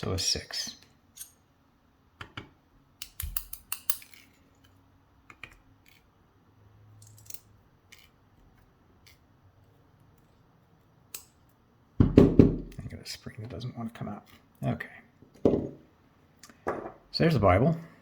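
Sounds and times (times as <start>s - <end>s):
small metal lock clicks: 3.0s - 4.2s.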